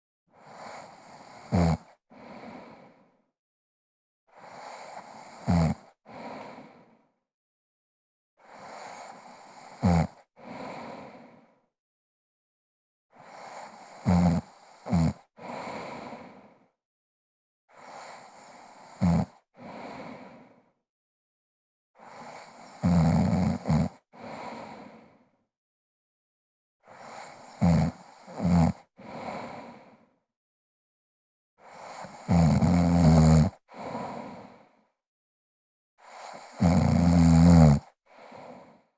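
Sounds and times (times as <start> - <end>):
woman snoring heavily: 0.4 - 2.8, 4.4 - 6.7, 8.5 - 11.2, 13.3 - 16.3, 17.8 - 20.4, 22.0 - 25.0, 27.0 - 29.8, 31.7 - 34.5, 36.1 - 38.6.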